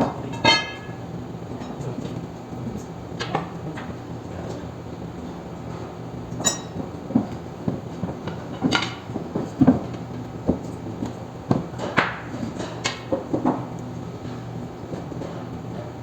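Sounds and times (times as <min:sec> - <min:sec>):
steady low hum: 0:00.0 - 0:16.0
metal tools knocking and clanking: 0:00.3 - 0:01.0
ringing metal clink: 0:00.4 - 0:01.0.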